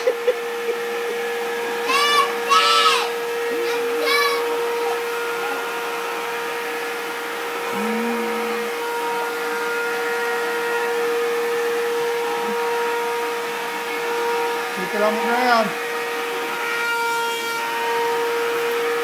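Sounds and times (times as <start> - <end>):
vacuum cleaner running: 0.0 - 19.0.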